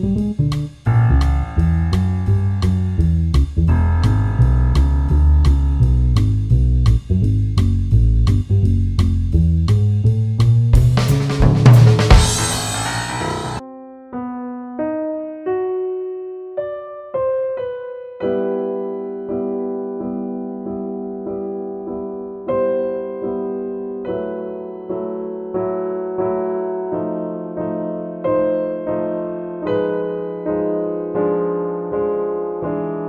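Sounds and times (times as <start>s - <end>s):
drum-backed music: 0.0s - 0.9s, 7.6s - 13.6s
piano notes and chords: 0.0s - 33.0s.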